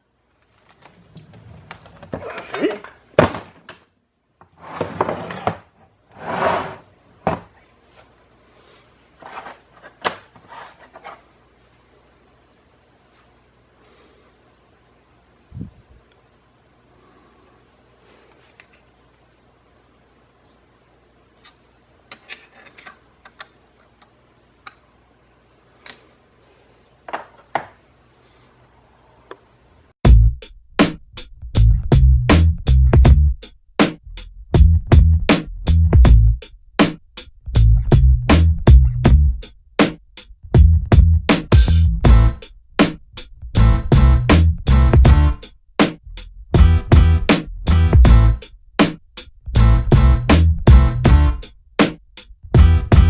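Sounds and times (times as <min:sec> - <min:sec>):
objects scraping and rubbing: 0:04.4 - 0:08.1, 0:09.1 - 0:11.4.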